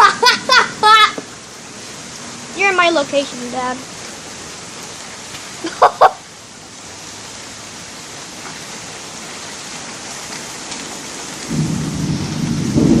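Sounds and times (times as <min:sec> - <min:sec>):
heavy rain hiss: 0:00.0 - 0:13.0
thunder rumbling: 0:11.4 - 0:13.0.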